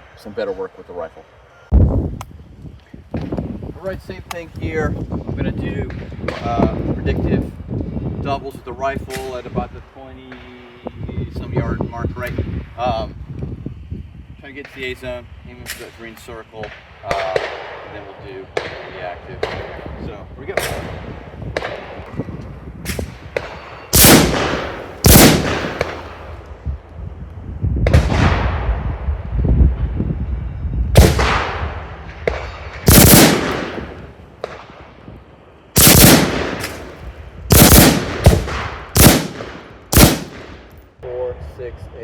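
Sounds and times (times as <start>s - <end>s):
faint distant shots: 16.6s - 19.8s, 22.9s - 26.4s, 31.0s - 35.0s, 35.8s - 40.8s
rifle shots echoing: 23.4s - 26.3s, 31.0s - 31.7s, 32.3s - 34.8s, 35.8s - 40.7s.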